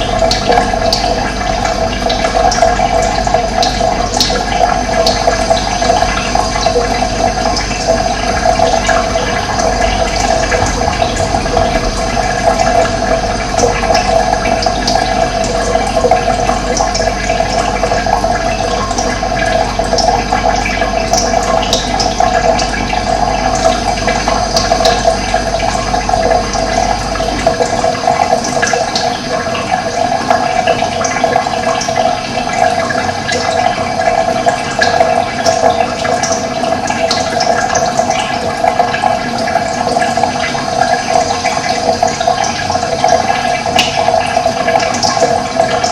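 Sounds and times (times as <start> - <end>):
running water rushing: 0.0 - 45.9
low rumble: 7.0 - 18.4.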